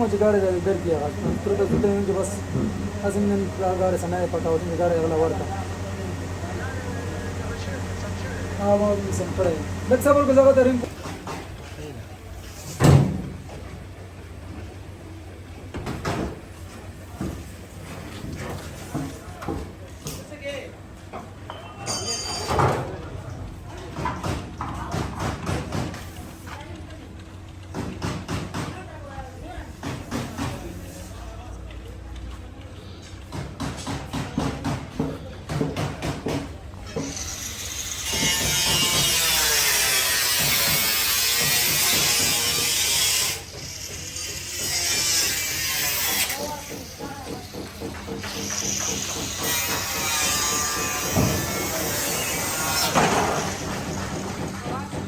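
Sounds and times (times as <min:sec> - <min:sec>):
voices talking: 0:00.0 - 0:11.1.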